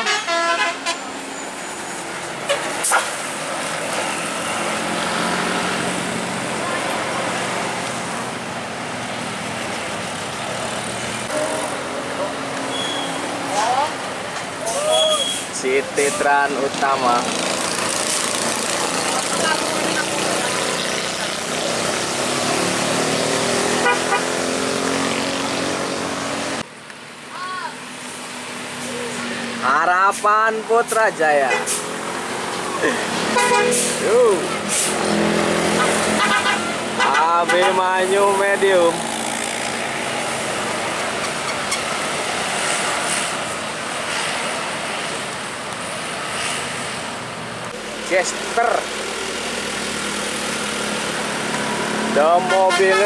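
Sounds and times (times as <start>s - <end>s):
bus horn toot: 0.0s - 1.2s, 12.7s - 13.2s, 23.7s - 24.6s, 33.3s - 34.6s, 35.7s - 37.9s, 52.4s - 53.0s
road traffic passing: 0.0s - 53.0s.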